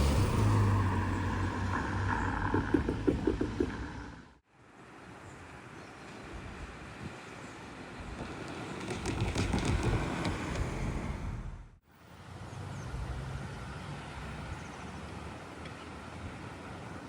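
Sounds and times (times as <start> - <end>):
vehicle passing close by: 0.0 - 4.3
low hum of traffic: 0.0 - 17.0.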